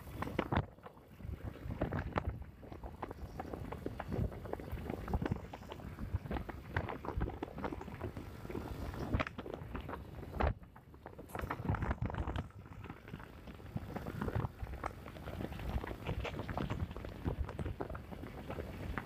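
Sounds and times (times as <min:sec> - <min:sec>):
motorcycle rumble: 0:00.0 - 0:19.0
wind buffeting microphone: 0:00.0 - 0:19.0.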